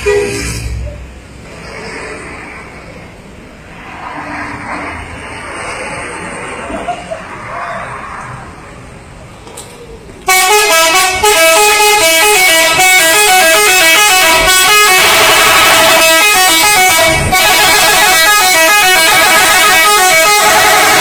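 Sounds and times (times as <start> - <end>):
musical air horn playing tune: 10.3 - 21.0.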